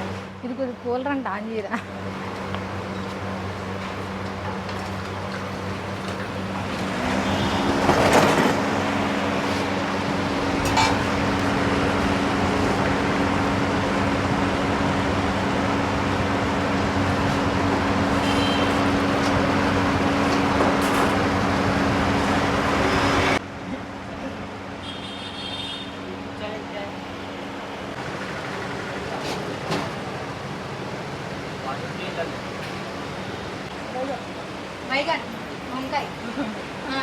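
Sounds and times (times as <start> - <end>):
air cooler fan motor humming: 8.6 - 23.4.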